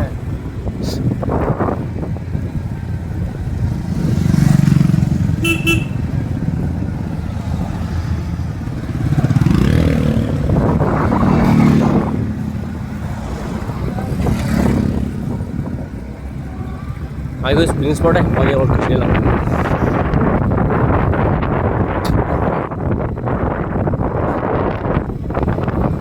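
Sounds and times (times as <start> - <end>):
motorcycle engine running: 0.0 - 26.0
horn toot: 5.4 - 6.2.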